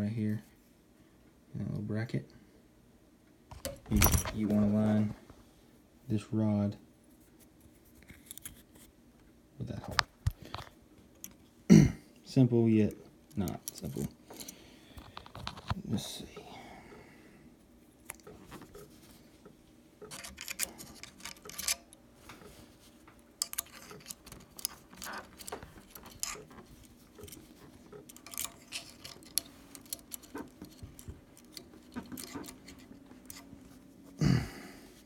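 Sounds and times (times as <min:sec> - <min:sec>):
small metallic clicks and taps: 0:18.0 - 0:33.5.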